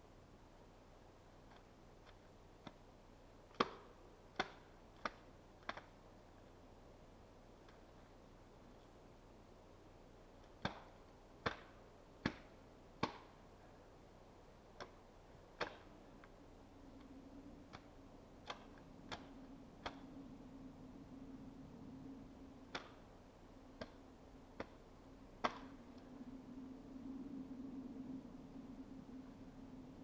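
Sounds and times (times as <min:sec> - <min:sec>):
faint low hum: 0:00.0 - 0:30.0.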